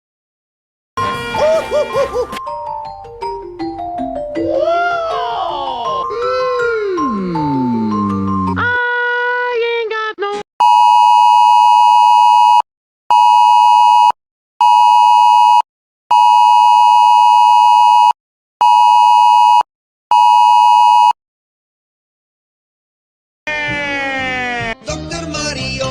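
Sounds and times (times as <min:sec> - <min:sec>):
short bit of music: 0:01.0 - 0:02.4.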